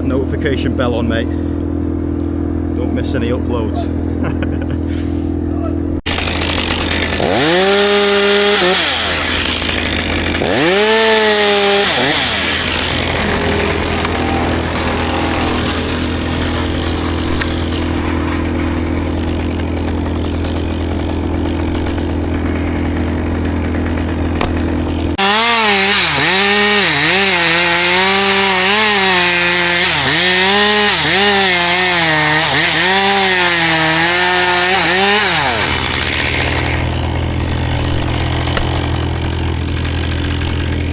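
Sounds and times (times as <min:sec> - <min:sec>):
chainsaw cutting wood: 0:06.0 - 0:40.9
low engine hum: 0:12.4 - 0:25.2.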